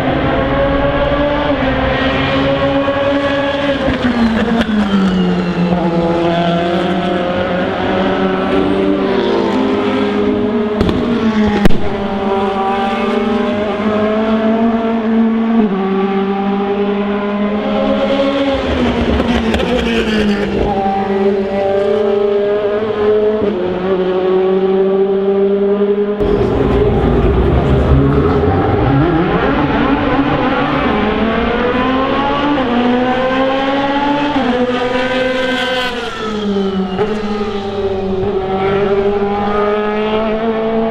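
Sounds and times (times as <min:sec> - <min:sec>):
race car engines running: 0:26.2 - 0:33.0.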